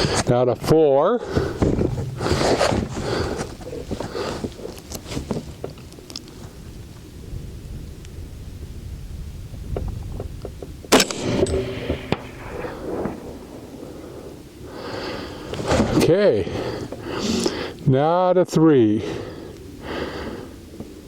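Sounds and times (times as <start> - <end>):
low steady rumble: 1.2 - 4.6
rifle shot: 10.9 - 13.8.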